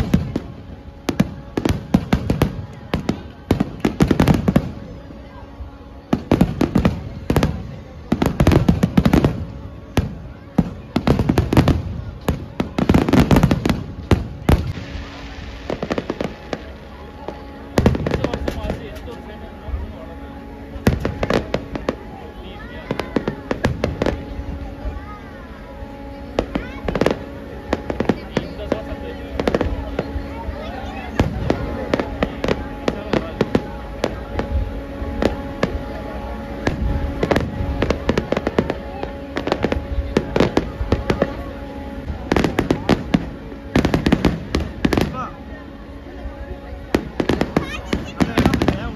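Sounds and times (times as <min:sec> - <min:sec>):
fireworks bangs and crackles: 0:00.0 - 0:48.9
low continuous rumble: 0:00.0 - 0:48.9.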